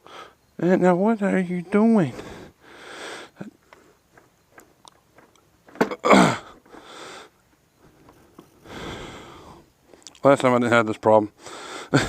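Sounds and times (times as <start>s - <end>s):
man groaning with effort: 6.0s - 6.6s
man exhaling breathily: 8.6s - 9.7s.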